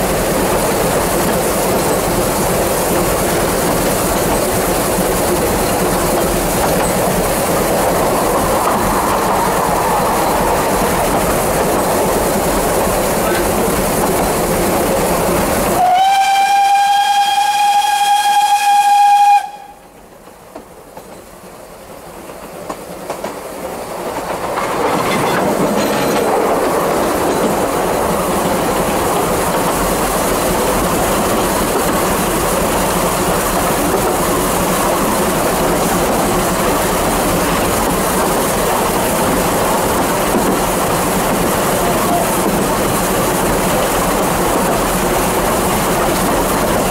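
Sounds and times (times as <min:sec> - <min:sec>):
train running on track: 0:00.0 - 0:46.9
steam locomotive whistle: 0:15.8 - 0:19.9.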